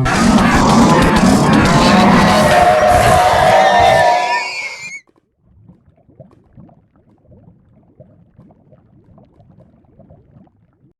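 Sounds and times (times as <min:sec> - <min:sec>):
music: 0:00.0 - 0:02.5
stomach gurgling: 0:04.8 - 0:10.9.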